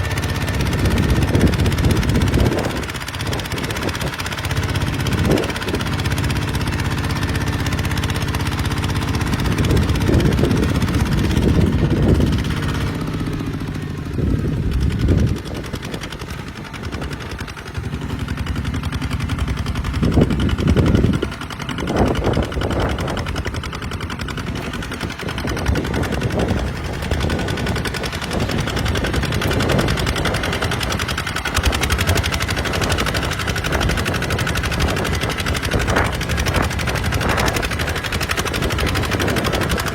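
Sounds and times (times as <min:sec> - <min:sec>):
diesel engine thumping: 0:00.0 - 0:39.9.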